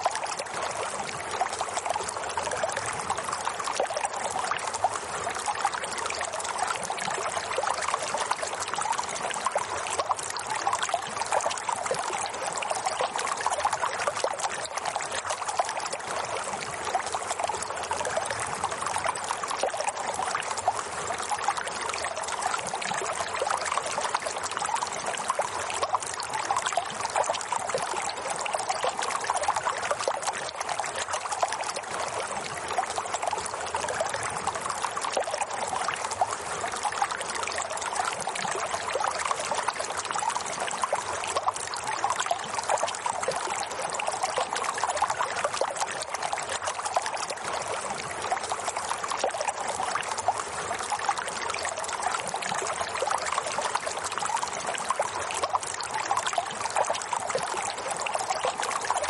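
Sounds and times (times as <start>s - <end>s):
water trickling: 0.0s - 59.0s.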